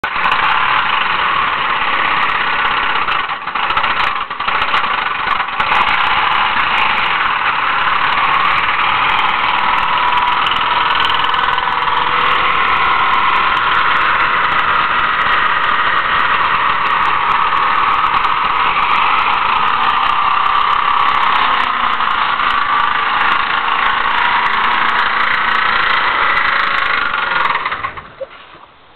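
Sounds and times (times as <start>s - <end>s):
car engine at high revs: 0.0s - 27.9s.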